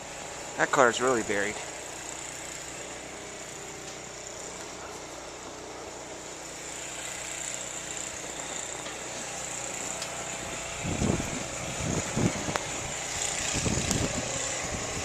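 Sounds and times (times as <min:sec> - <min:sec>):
vehicle engine hum: 0:00.0 - 0:15.0.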